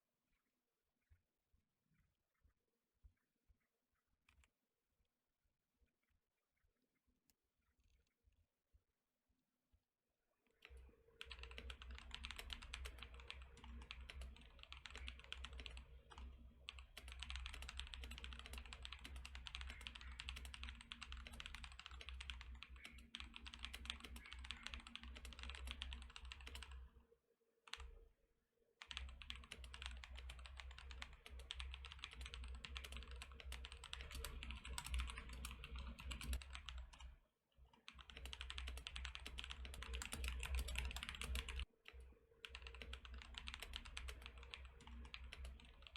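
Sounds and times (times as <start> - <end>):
mechanical keyboard typing: 10.6 - 26.8, 28.8 - 37.1, 37.9 - 41.7, 42.4 - 45.9.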